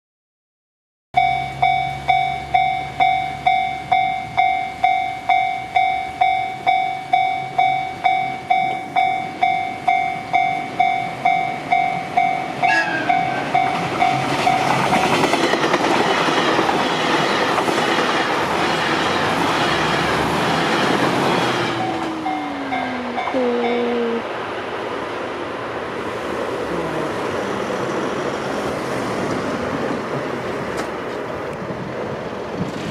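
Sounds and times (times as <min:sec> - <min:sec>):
railroad crossing bell dinging: 0:01.2 - 0:21.0, 0:21.6 - 0:24.2
train horn: 0:12.6 - 0:13.6
train wheels clattering over joints: 0:13.6 - 0:22.1.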